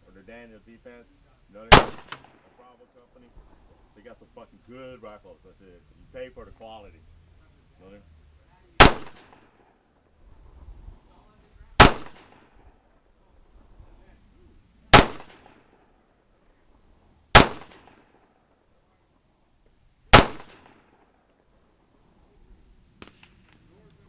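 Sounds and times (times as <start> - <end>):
gunshots with echo: 1.7 - 2.5, 8.8 - 9.4, 15.0 - 15.7, 17.4 - 18.1, 20.2 - 20.9.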